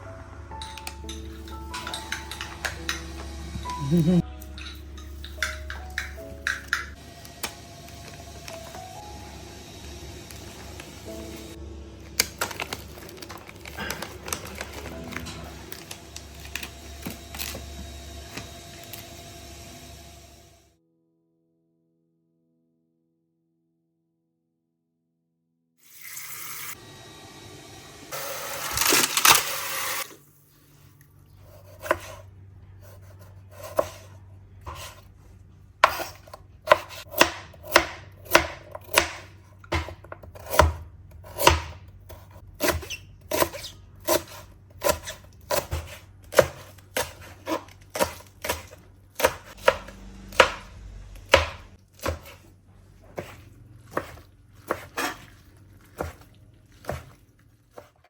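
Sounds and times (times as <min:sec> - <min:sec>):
knife chopping on cutting board: 0:31.6 - 0:32.2, 0:32.8 - 0:35.0, 0:35.8 - 0:58.0.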